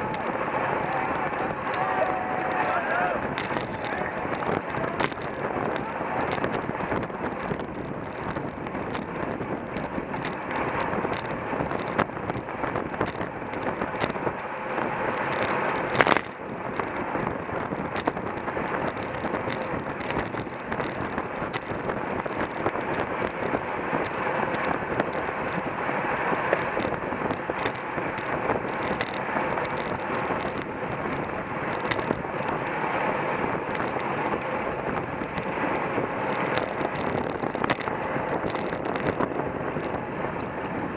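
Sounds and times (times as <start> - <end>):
bicycle rolling noise: 0.0 - 40.9
rattles and clicks: 0.0 - 40.9
wind on microphone: 0.0 - 40.9.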